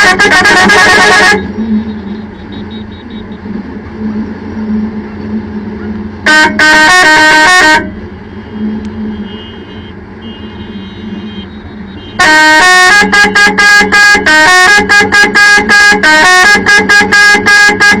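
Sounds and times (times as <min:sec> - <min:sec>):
musical air horn tune: 0:00.0 - 0:03.2, 0:06.3 - 0:18.0
steady low hum: 0:01.4 - 0:06.6.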